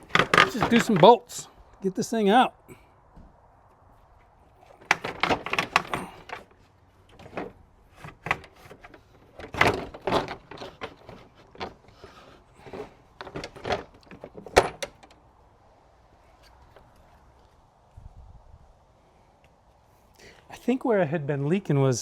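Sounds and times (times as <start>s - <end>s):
hand tools clinking and knocking: 0.0s - 1.5s, 4.6s - 15.2s.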